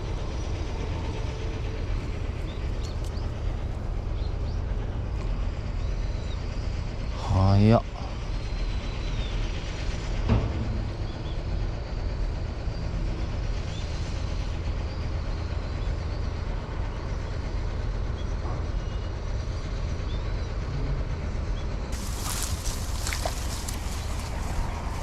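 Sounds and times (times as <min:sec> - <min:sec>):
wind buffeting microphone: 0:21.9 - 0:25.0.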